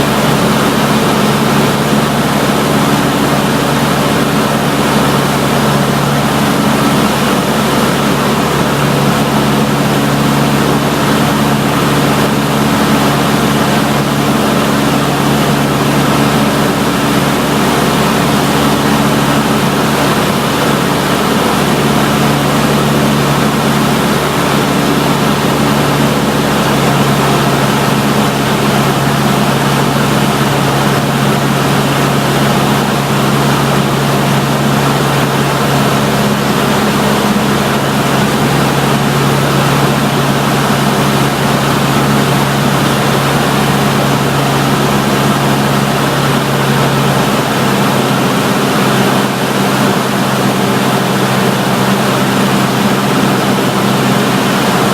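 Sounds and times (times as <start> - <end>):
propeller plane engine drone: 0.0 - 54.9.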